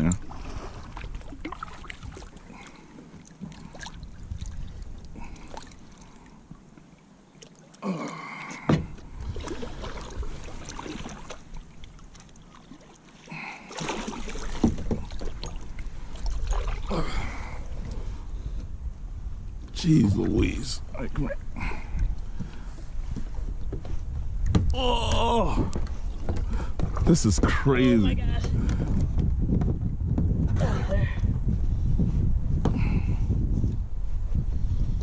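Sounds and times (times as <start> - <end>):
low rumble of wind or water: 0.0 - 35.0
knocks and rubbing on a kayak: 14.5 - 15.6, 22.3 - 24.8, 25.6 - 30.6.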